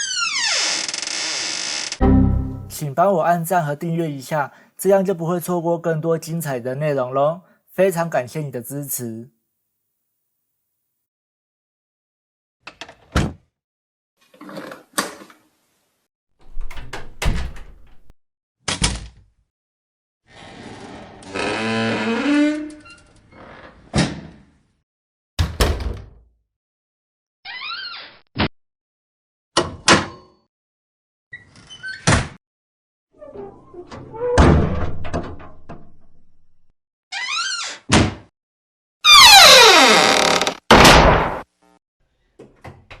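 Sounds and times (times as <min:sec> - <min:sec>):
door hinge creaking: 0:00.0 - 0:02.0, 0:39.1 - 0:40.7
doors shutting with a thud: 0:16.4 - 0:18.1.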